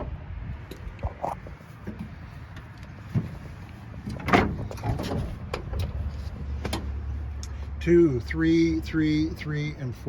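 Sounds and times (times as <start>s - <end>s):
van doors knocks and clicks: 4.0s - 6.0s.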